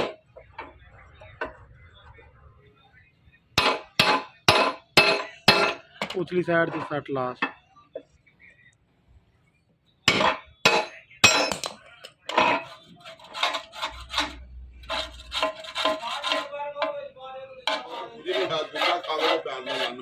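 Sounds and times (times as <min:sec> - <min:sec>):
hand tool scraping metal: 0:10.1 - 0:16.6, 0:17.7 - 0:20.0.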